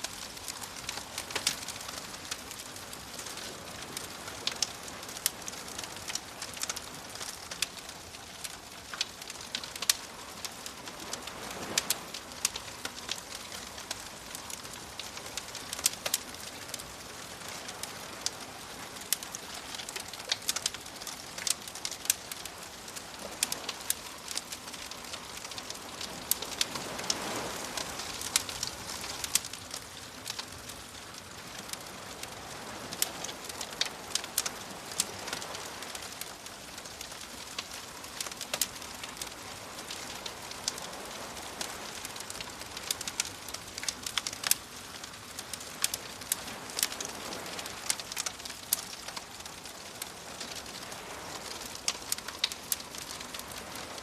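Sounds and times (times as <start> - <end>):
campfire crackling and popping: 0.0 - 54.0
waves washing in: 22.2 - 30.2.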